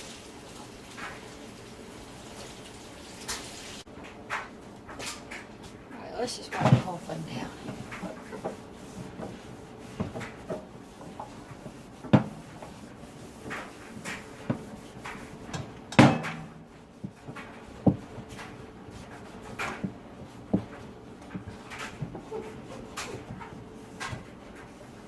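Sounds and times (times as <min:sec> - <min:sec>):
toaster oven knocks and clunks: 0:10.0 - 0:12.8, 0:13.5 - 0:18.8.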